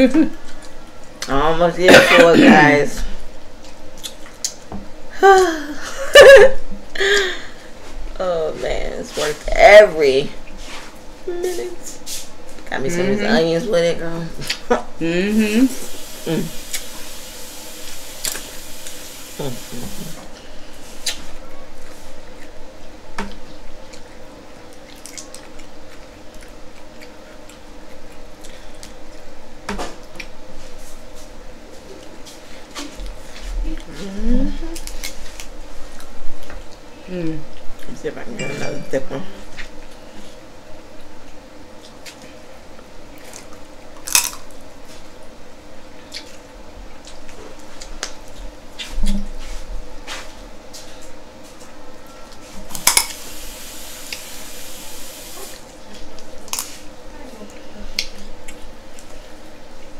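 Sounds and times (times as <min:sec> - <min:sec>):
wet squishing eating sounds: 0:15.7 - 0:20.2
wet chewing: 0:23.3 - 0:29.2.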